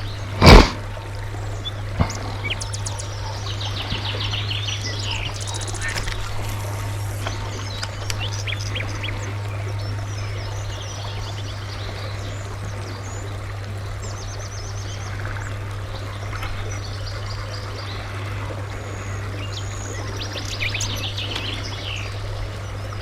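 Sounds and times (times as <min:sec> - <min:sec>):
constant low hum: 0:00.0 - 0:23.0
small birds chirping: 0:01.5 - 0:13.3, 0:14.0 - 0:23.0
steady rushing noise: 0:04.8 - 0:08.8.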